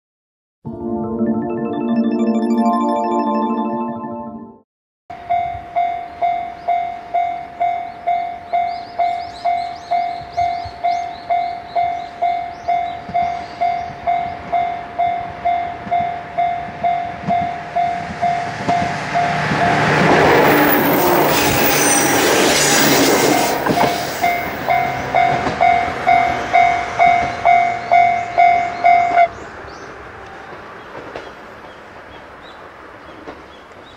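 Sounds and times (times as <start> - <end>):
level crossing bell dinging: 0.7 - 4.6
train rumble and wheel noise: 5.2 - 33.9.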